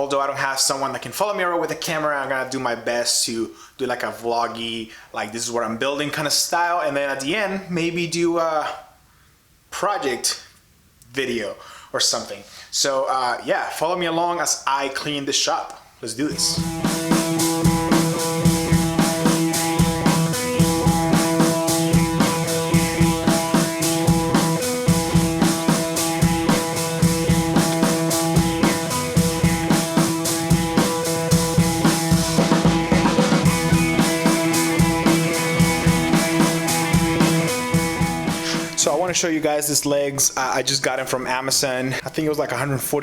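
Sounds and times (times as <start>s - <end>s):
sustained guitar chords: 16.3s - 38.8s
drum kit beat: 16.3s - 39.2s.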